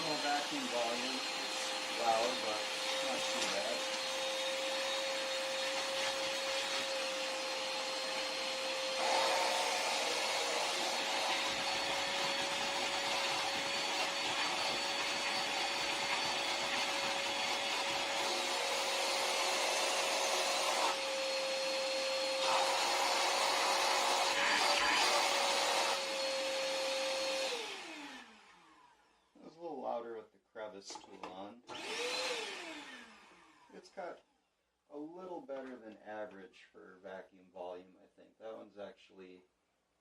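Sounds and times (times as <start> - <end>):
shop vacuum motor whining: 0.0 - 29.1, 30.9 - 33.8.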